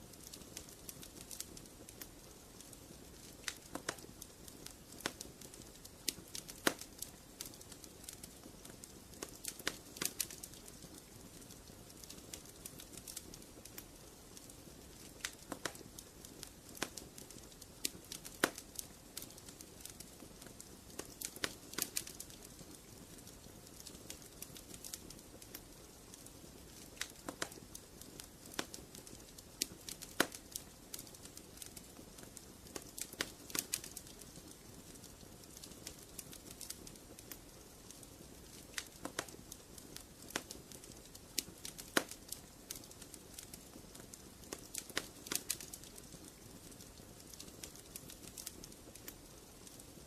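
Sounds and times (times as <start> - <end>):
soft hiss of burning: 0.0 - 50.0
wood fire crackling and popping: 0.0 - 50.0.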